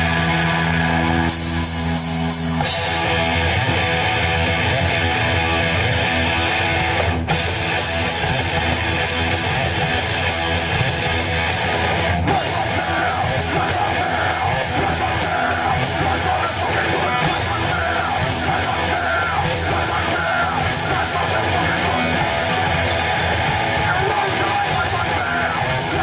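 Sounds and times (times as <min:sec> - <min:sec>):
heavy rock band playing: 0:00.0 - 0:26.0
person yelling vocals: 0:12.2 - 0:22.2, 0:23.7 - 0:26.0.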